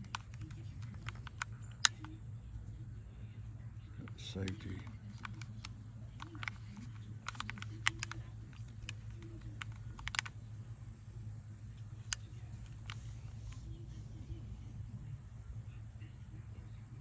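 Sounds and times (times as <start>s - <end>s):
light handling clicks and taps: 0.0s - 2.2s, 4.0s - 10.4s, 11.7s - 13.7s
low steady hum: 0.0s - 17.0s.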